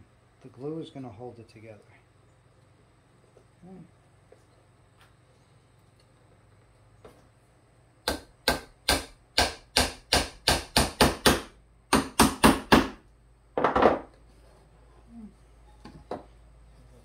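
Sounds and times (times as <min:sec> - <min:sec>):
hammer driving nails into wood: 0:08.0 - 0:13.0.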